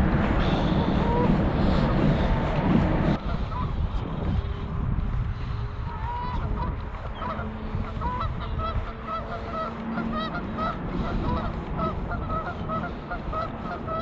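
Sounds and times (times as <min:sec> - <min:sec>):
steady low rumble: 0:00.0 - 0:14.0
seagulls squawking: 0:00.4 - 0:01.8, 0:05.8 - 0:14.0.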